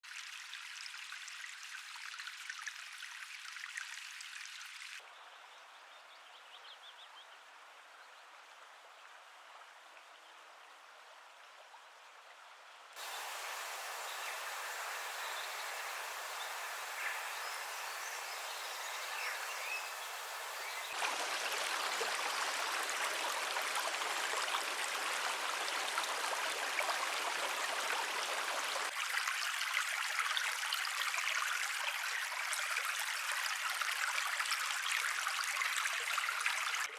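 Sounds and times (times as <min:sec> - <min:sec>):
stream running water: 0:00.0 - 0:36.9
faint bird chirps: 0:13.0 - 0:21.0.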